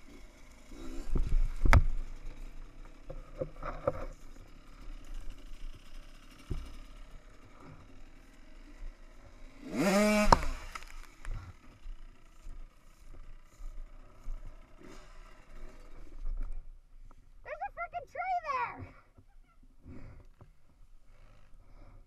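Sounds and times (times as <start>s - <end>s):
dirt bike engine revving: 0.0s - 16.3s.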